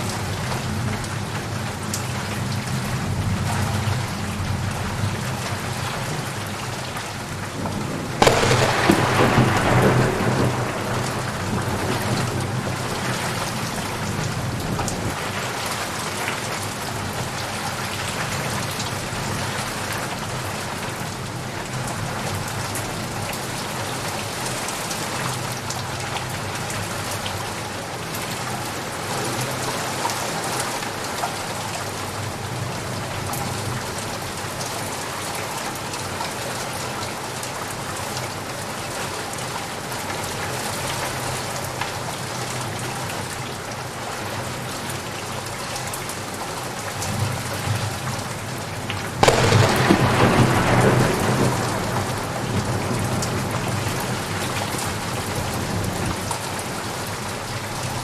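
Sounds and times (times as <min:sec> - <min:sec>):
steady rain pattering: 0:00.0 - 0:58.0
low thunder rumble: 0:07.6 - 0:15.2, 0:49.2 - 0:56.2.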